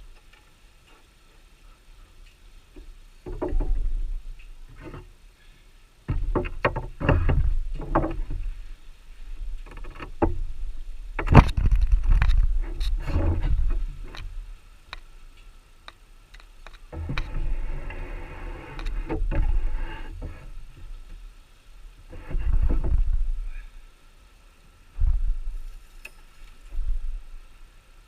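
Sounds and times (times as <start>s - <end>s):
wind rumble on microphone: 6.1s - 14.7s, 16.9s - 23.8s, 24.9s - 25.8s, 26.5s - 27.7s
steady hum: 6.1s - 28.0s
hive tool knocking and scraping: 22.0s - 23.4s.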